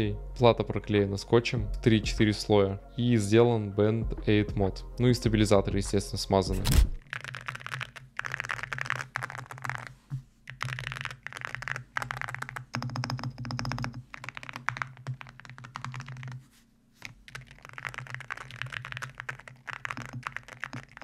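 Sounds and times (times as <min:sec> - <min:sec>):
fast typing on mechanical keyboard: 0:07.0 - 0:16.4, 0:17.0 - 0:21.0.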